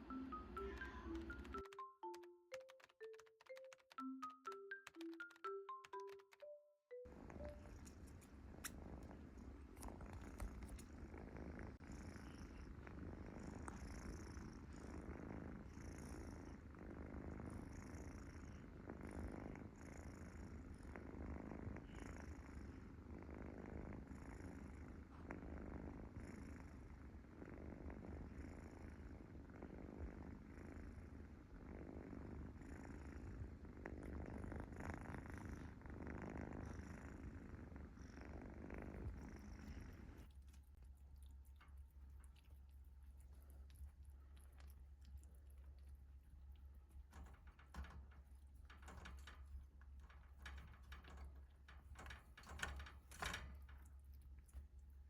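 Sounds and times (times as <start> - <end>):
cat purring: 0.0 - 2.2, 7.1 - 55.0
faint high-pitched sounds: 0.0 - 2.2.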